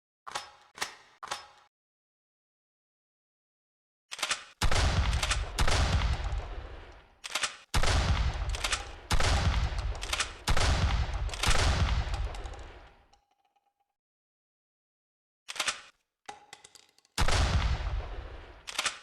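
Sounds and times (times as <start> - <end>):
short clicks: 4.1 - 5.5, 6.2 - 7.7, 8.5 - 9.0, 10.0 - 10.5, 15.5 - 17.1, 18.7 - 19.0
shotgun shots: 4.6 - 7.0, 7.7 - 13.0, 17.2 - 19.0.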